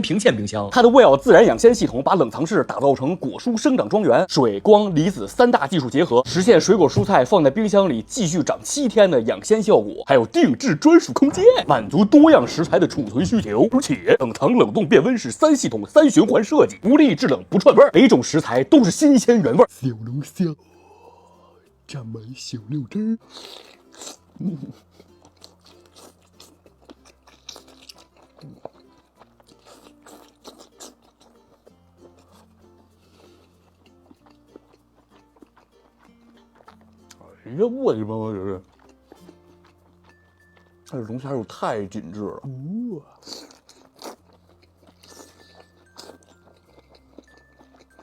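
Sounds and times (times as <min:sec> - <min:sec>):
quiet background music: 0:00.0 - 0:48.0
person chewing and crunching: 0:23.2 - 0:37.4, 0:38.5 - 0:41.0, 0:42.5 - 0:48.0.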